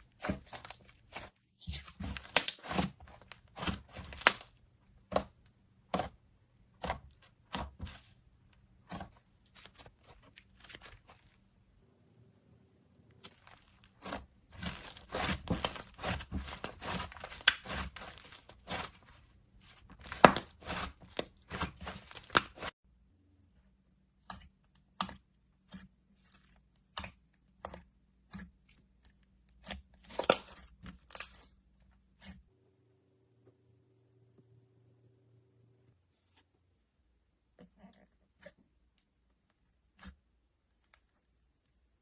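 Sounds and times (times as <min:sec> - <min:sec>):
slime crackling and popping: 0:00.1 - 0:04.5, 0:13.2 - 0:19.0, 0:19.9 - 0:22.7.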